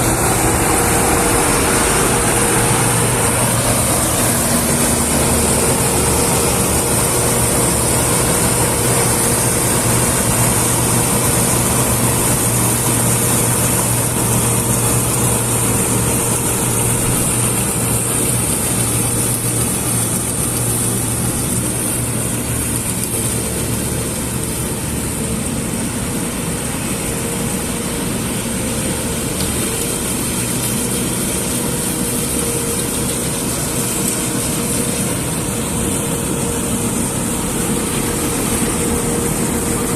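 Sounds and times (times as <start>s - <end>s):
high hiss: 0.0s - 25.0s
farm machine engine running: 0.0s - 39.9s.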